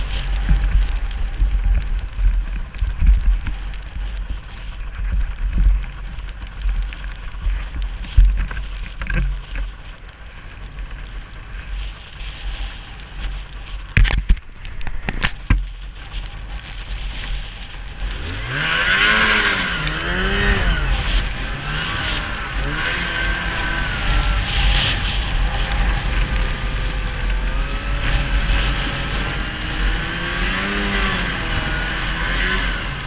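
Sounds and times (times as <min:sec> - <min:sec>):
faint snowmobile engine: 0:15.9 - 0:33.0
wind buffeting microphone: 0:17.5 - 0:33.0.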